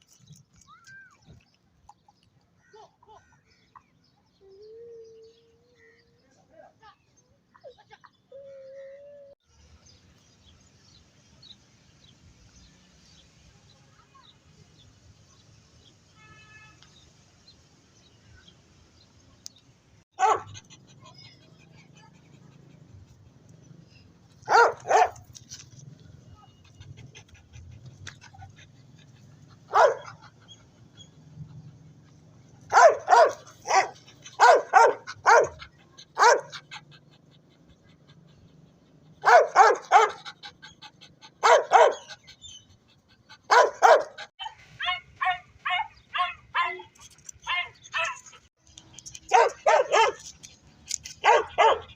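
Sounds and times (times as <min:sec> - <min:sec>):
dog barking: 0:20.2 - 0:20.6, 0:24.5 - 0:25.2, 0:29.7 - 0:30.2, 0:32.7 - 0:35.6, 0:36.2 - 0:36.6, 0:39.2 - 0:40.2, 0:41.4 - 0:42.1, 0:43.5 - 0:46.4, 0:49.3 - 0:50.2, 0:51.2 - 0:51.9.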